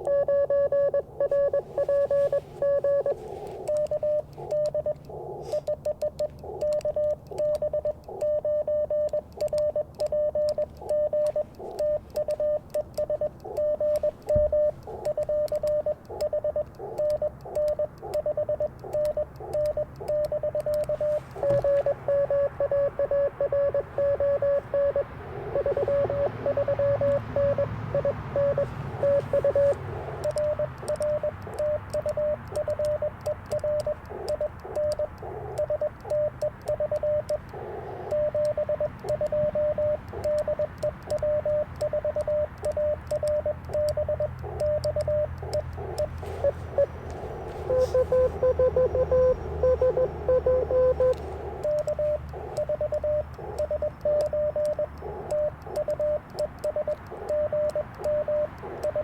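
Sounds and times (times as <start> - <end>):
morse code tone: 0.0 - 59.0
radio band noise hiss: 1.2 - 5.7, 20.8 - 22.8, 23.6 - 31.9, 33.9 - 36.6, 37.2 - 40.2, 45.2 - 52.6.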